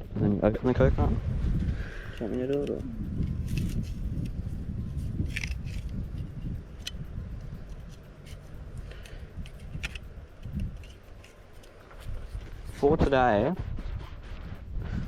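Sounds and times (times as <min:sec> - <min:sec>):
sharp clicks: 0:01.6 - 0:12.7
knife scraping coconut shell: 0:01.9 - 0:07.0, 0:07.6 - 0:12.9.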